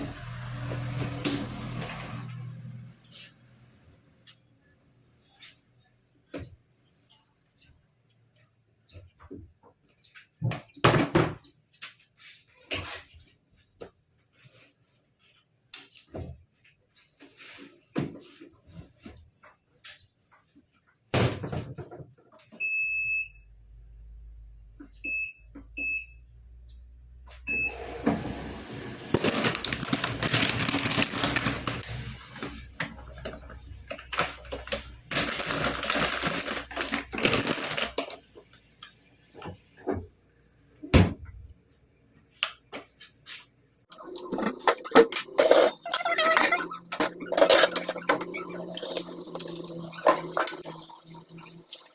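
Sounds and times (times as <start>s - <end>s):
washing machine panel beeping: 27.5s - 28.2s
washing machine humming: 27.5s - 40.3s, 46.2s - 51.9s.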